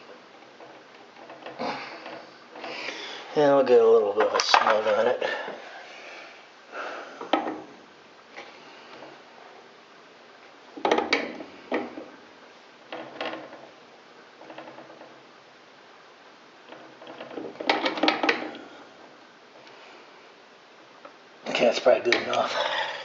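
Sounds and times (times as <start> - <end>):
metal clicking and clinking: 0.4 - 2.7.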